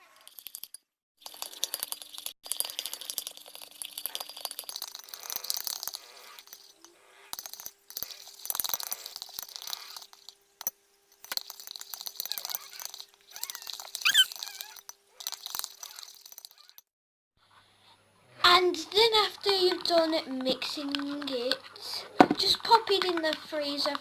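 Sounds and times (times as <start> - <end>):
short squeak: 13.4 - 14.8.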